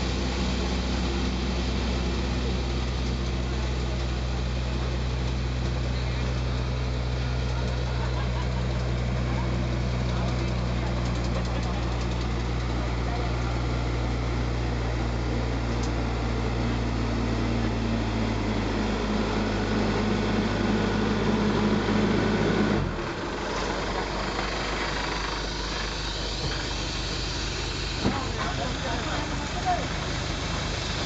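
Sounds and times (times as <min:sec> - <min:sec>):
diesel engine humming: 0:00.0 - 0:31.0
noisy machine: 0:00.0 - 0:31.0.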